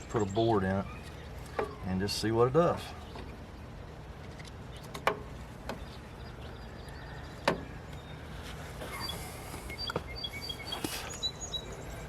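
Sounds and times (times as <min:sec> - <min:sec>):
low hum of road noise: 0:00.0 - 0:12.0
faint bird chirps: 0:05.8 - 0:12.0.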